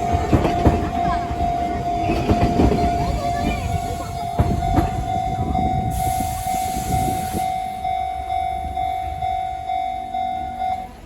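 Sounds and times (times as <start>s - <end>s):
level-crossing alarm ringing: 0.0s - 11.0s
train rumbling and clacking: 0.0s - 11.0s
hiss: 5.9s - 7.5s.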